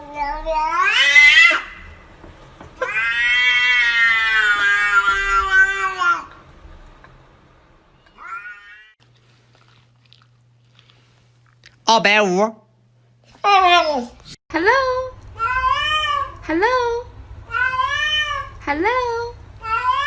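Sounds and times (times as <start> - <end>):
cat meowing in yowls: 0.6 - 1.8, 2.8 - 6.3, 8.1 - 9.0, 17.5 - 18.6, 19.6 - 20.0.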